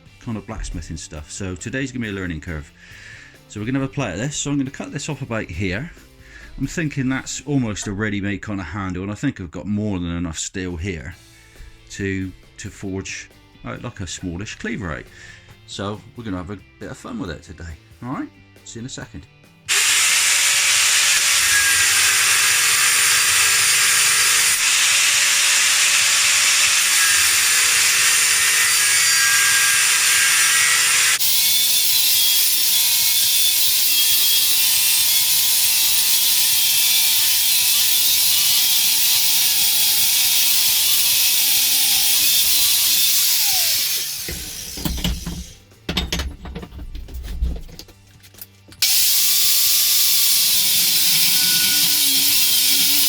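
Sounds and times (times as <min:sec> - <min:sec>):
power tool grinding metal: 0:19.7 - 0:46.5, 0:48.8 - 0:53.0.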